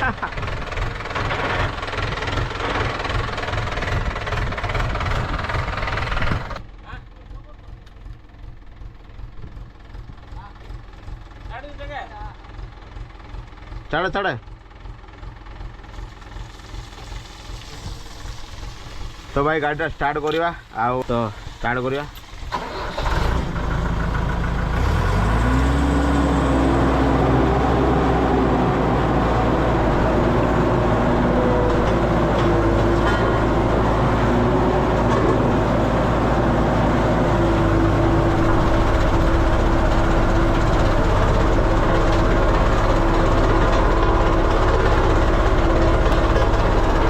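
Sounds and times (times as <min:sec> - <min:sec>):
road roller engine running: 0:00.0 - 0:47.0.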